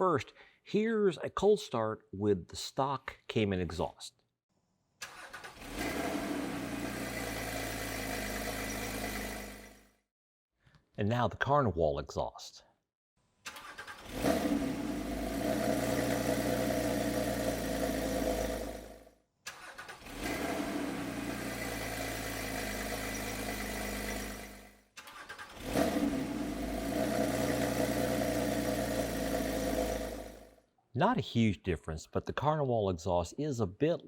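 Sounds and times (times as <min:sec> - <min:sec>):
car engine starting and idling: 0:05.0 - 0:09.9, 0:13.5 - 0:30.5.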